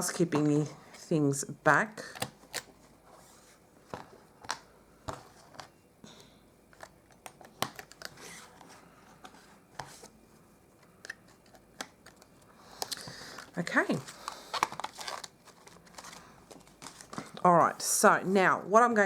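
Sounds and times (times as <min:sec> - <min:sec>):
plastic pouches rustling: 0:10.8 - 0:17.8.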